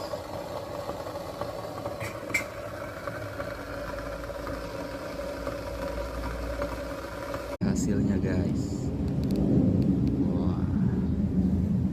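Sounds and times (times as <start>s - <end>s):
mechanical motor hum: 0.0s - 10.2s
deep rumble: 0.0s - 11.9s.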